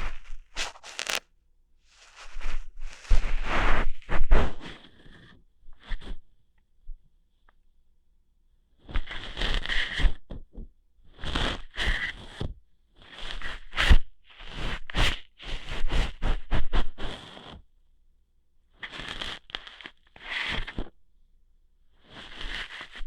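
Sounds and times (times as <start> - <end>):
scratching and rustling at microphone: 0.0 - 1.2, 1.9 - 6.2, 11.2 - 17.6, 18.9 - 21.0, 22.0 - 23.0.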